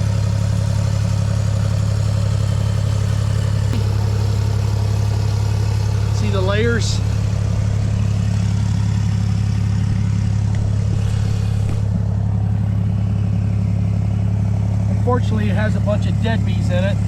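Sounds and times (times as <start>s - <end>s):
engine idling: 0.0s - 17.0s.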